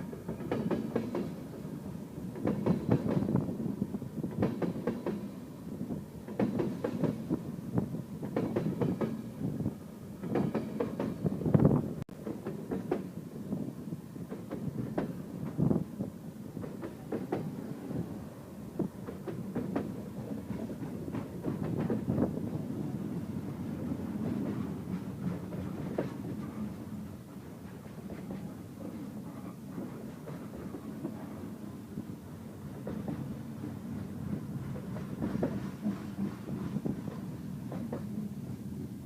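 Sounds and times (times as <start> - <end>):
train rumbling past: 0.0 - 39.0.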